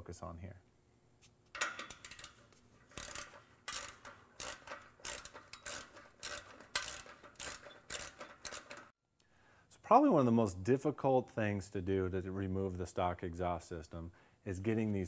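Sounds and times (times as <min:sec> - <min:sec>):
hand ratchet clicking: 0:01.6 - 0:08.9.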